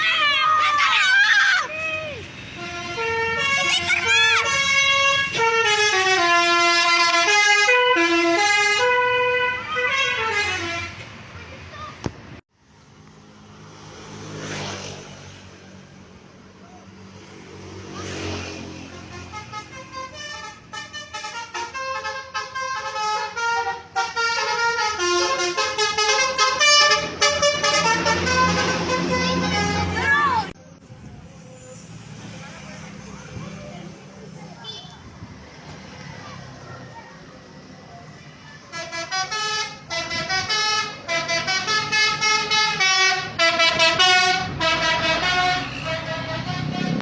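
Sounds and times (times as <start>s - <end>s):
bus horn playing a melody: 2.5s - 11.0s, 18.8s - 30.5s, 38.7s - 47.0s.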